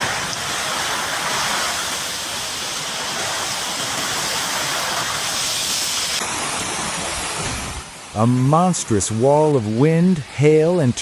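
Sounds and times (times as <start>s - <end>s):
wind roaring: 0.0s - 8.2s
heavy rain: 0.0s - 8.5s.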